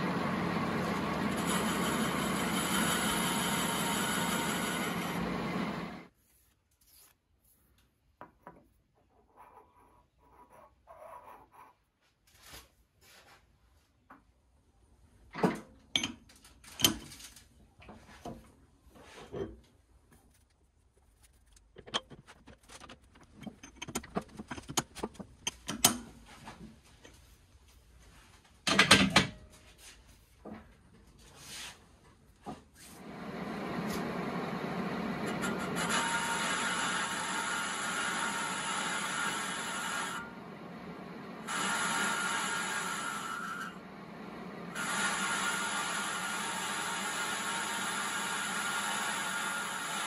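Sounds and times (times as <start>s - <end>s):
machine tool motor running: 0.0s - 6.1s, 33.0s - 50.0s
metal parts clicking and knocking: 21.7s - 26.0s.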